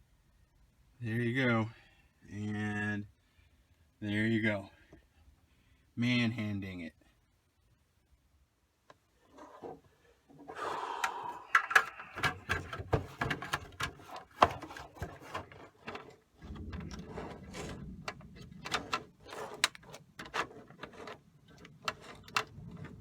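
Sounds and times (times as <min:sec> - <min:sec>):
cords rustling and rubbing: 0:09.1 - 0:10.6, 0:11.5 - 0:23.0
plastic trim and connectors clicking: 0:11.0 - 0:15.5.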